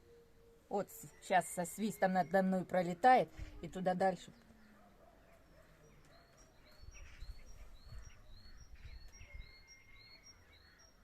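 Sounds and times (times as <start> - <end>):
songbird chirping: 0.0 - 11.0.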